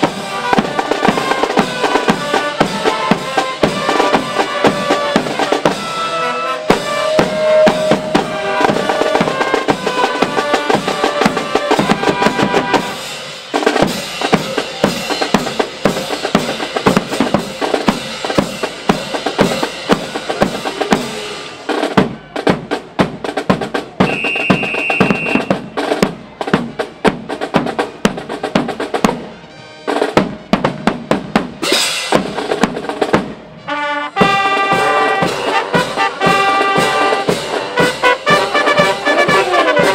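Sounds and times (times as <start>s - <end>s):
brass playing a tune: 0.0s - 21.9s, 33.4s - 39.9s
snare drums: 0.0s - 39.9s
bass drums: 13.6s - 21.2s, 21.8s - 29.4s, 30.1s - 33.6s.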